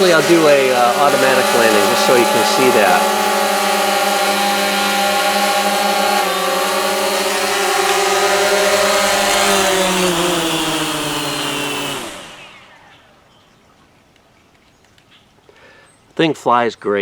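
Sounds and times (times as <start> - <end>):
drone propellers whining: 0.0 - 13.3.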